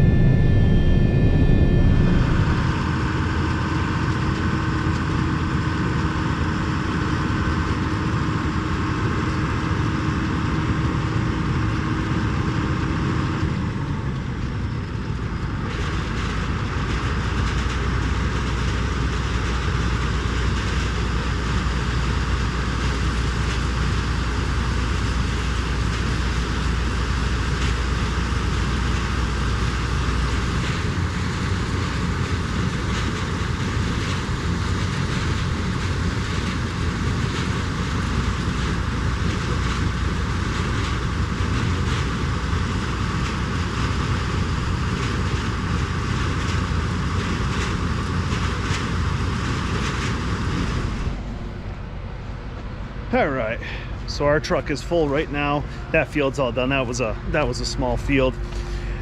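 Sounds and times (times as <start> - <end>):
steady tone: 0.0 - 3.6
harvest machinery engine drone: 0.0 - 59.0.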